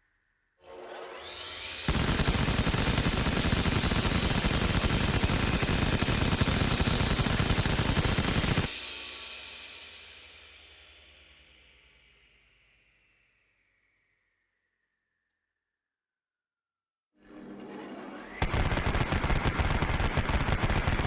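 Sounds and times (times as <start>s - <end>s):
spinning barrels whine: 1.1s - 13.7s, 18.1s - 21.0s
rotary cannon firing: 1.9s - 8.7s, 18.4s - 21.0s.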